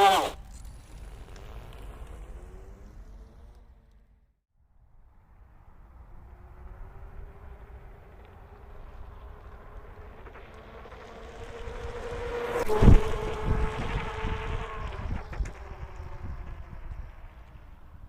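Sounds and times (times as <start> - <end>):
electric bike motor whining: 0.0 - 4.3, 6.1 - 18.0
wind gust: 12.6 - 17.4.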